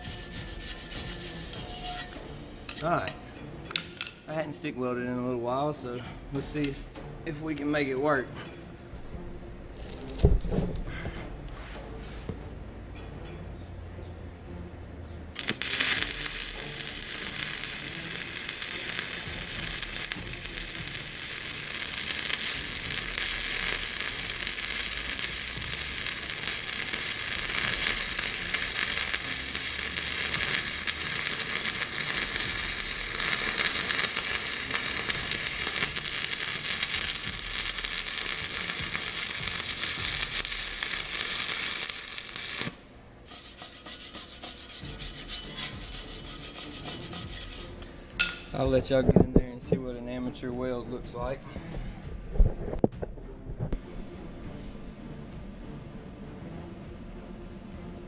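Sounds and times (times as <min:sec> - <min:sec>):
welding arc crackling sizzle: 0:09.7 - 0:10.5, 0:15.4 - 0:47.8.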